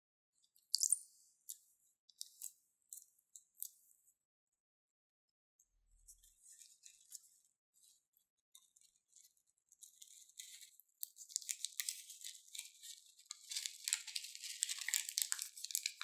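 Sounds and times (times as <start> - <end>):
slime squeezed crackling and popping: 13.5 - 16.0.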